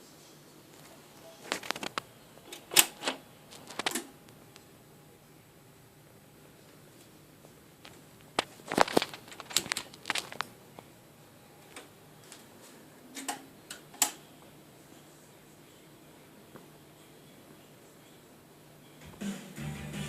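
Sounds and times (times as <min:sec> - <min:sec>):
hands handling audio equipment: 0:00.8 - 0:04.1, 0:07.8 - 0:10.5.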